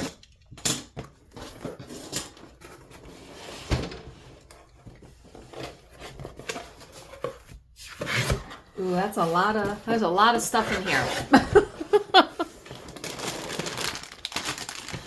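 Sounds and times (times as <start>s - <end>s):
cardboard box scraping and rustling: 1.3s - 9.8s.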